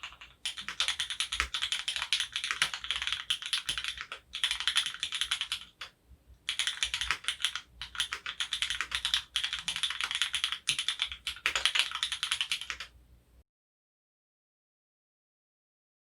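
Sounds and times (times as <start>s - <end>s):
mechanical keyboard typing: 0.0s - 5.9s, 6.5s - 12.9s.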